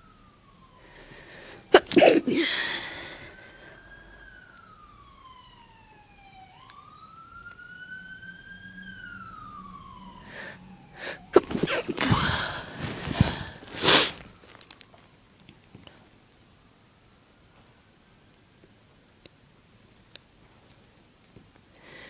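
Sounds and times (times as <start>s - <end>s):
siren wailing: 0.0s - 15.4s
person sneezing: 1.7s - 3.2s, 11.0s - 14.2s.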